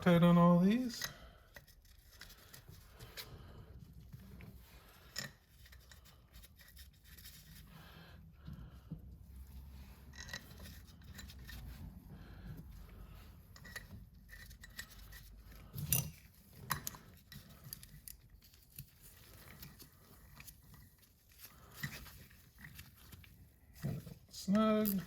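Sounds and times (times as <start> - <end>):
metal tool clicks and scrapes: 13.5 - 18.9.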